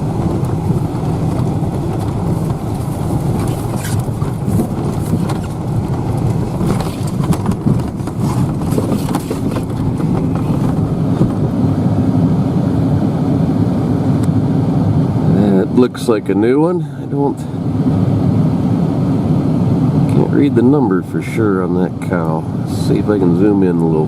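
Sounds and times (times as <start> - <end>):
rattles and knocks: 0.0 - 11.5
tractor engine running: 0.0 - 20.6.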